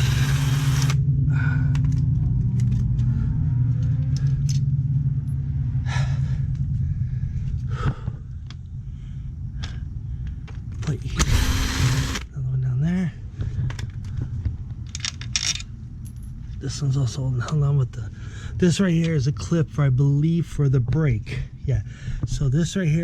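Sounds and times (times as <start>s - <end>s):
cordless drill humming: 0.0s - 1.0s, 11.2s - 12.3s.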